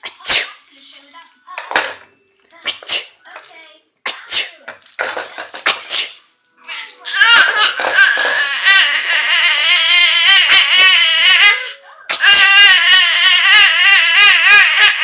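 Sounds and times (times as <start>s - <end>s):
baby squealing: 6.6s - 15.0s.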